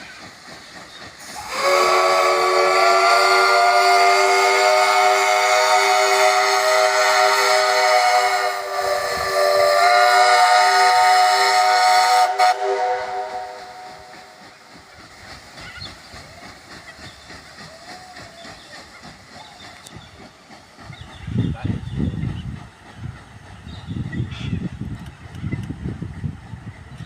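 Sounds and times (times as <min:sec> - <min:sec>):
loud steam whistle blast: 0:01.2 - 0:14.4.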